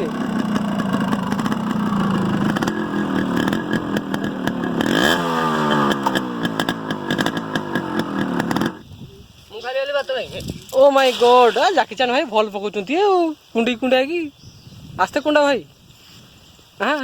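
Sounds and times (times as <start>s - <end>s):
motorcycle engine revving: 0.0s - 8.9s.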